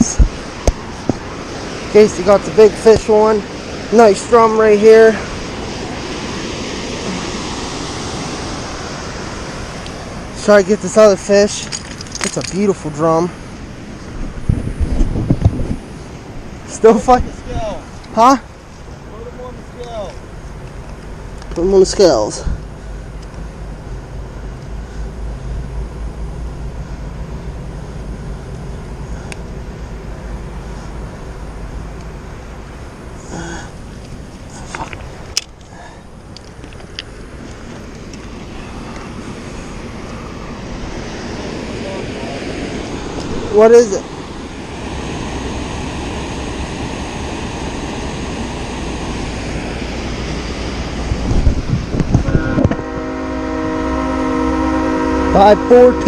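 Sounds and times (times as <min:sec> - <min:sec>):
water rushing through spillway: 0:00.0 - 0:11.8, 0:37.9 - 0:56.0.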